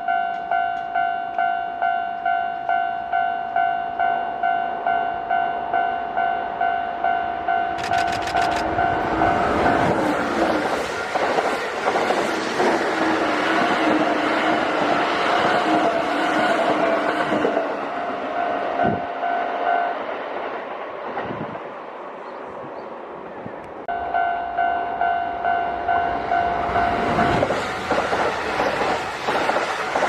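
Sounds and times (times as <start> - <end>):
crossing warning bell ringing: 0.0 - 10.6, 13.9 - 20.0, 23.9 - 28.3
train wheels on rails: 7.8 - 23.9, 25.8 - 30.0.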